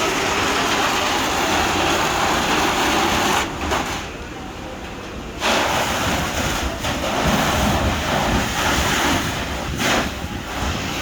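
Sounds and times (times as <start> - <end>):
wind buffeting microphone: 6.1 - 11.0.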